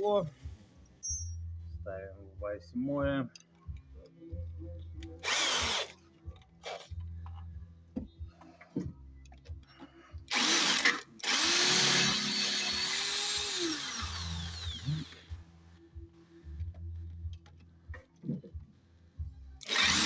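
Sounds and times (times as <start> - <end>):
electric drill boring into brake pad: 5.2 - 5.9, 10.3 - 15.3, 19.6 - 20.0.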